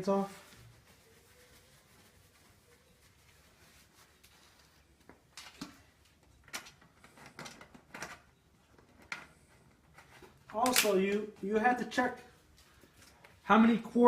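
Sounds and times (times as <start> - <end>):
handling clicks and rustles: 2.3 - 13.4.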